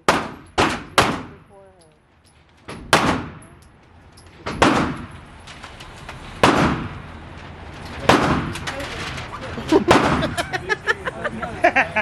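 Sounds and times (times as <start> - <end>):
gunshots with echo: 0.1 - 1.4, 2.9 - 3.4, 4.6 - 5.2, 6.4 - 7.0, 8.1 - 8.6, 9.9 - 10.3.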